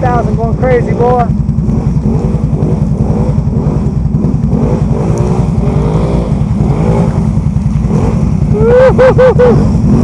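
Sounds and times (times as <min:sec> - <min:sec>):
atv engine revving under load: 0:00.0 - 0:10.0.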